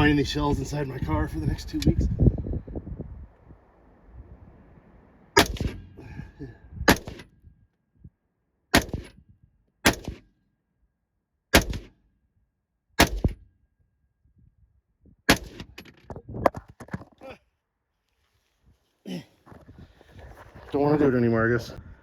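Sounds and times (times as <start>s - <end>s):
rifle gunshots: 5.4s - 6.0s, 6.9s - 7.3s, 8.7s - 9.1s, 9.8s - 10.2s, 11.6s - 11.9s, 13.0s - 13.4s, 15.3s - 15.7s.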